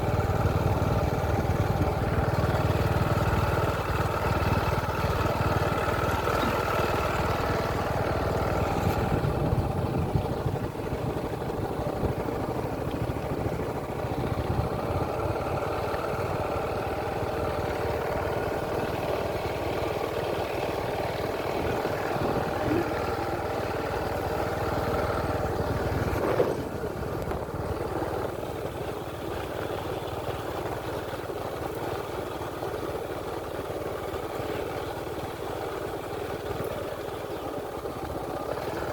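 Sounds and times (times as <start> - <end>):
engine rumbling: 0.0 - 38.9.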